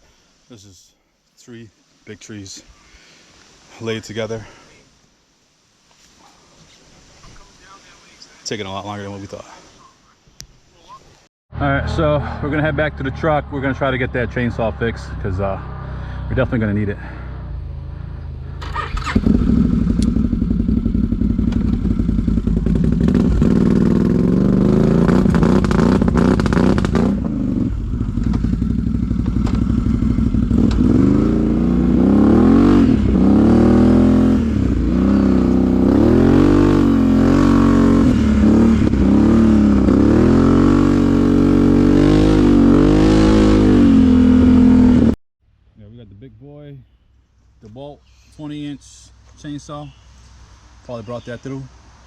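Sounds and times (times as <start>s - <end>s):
vehicle engine revving: 11.5s - 45.2s.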